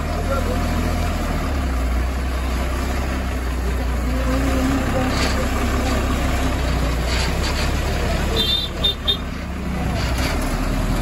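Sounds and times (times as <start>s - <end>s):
heavy diesel engine rumbling: 0.0s - 11.0s.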